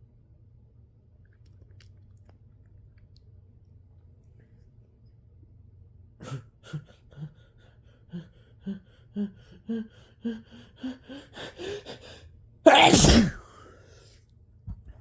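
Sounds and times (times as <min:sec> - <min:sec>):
person gasping before sneeze: 0:12.7 - 0:13.5.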